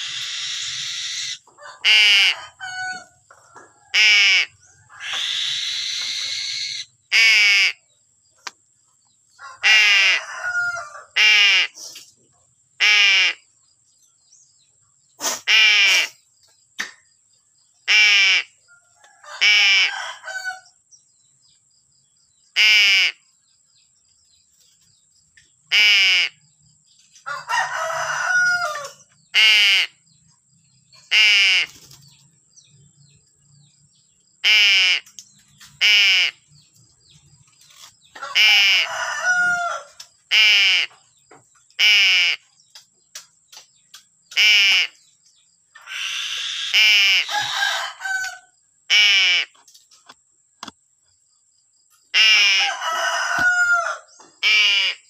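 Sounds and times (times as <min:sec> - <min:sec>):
crow cawing: 0:03.9 - 0:07.7, 0:45.8 - 0:49.5
myna chattering calls: 0:04.0 - 0:07.7.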